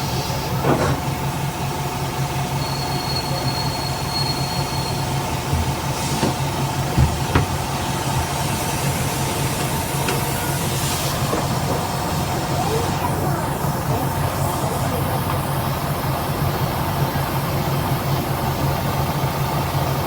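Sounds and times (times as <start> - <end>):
bus diesel engine running: 0.0 - 20.0
thin high whistle: 2.6 - 5.1
whine-like differential growl: 5.2 - 18.0.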